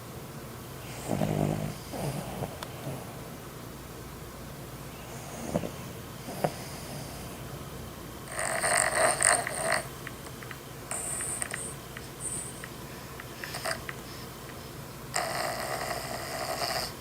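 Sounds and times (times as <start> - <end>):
dog snoring: 0.8 - 3.2, 5.1 - 7.3, 8.2 - 9.9, 10.9 - 12.7, 13.4 - 14.2, 15.1 - 17.0.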